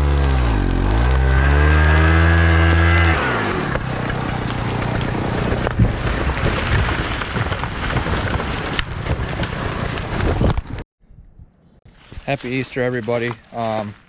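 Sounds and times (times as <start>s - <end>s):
chainsaw idling: 0.0s - 8.8s
wood cracking and snapping: 0.0s - 10.8s
tree falling heavy thuds: 3.8s - 10.8s.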